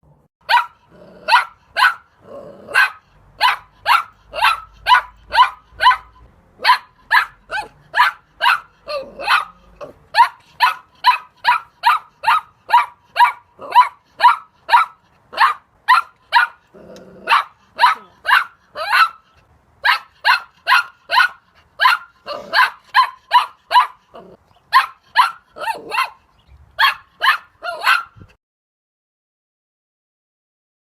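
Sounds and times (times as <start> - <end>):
puppy yapping: 0.5 - 28.3
puppy growling: 0.8 - 1.6, 2.2 - 3.0, 8.5 - 10.6, 16.4 - 18.9, 22.2 - 22.9, 24.0 - 24.4, 25.6 - 26.1.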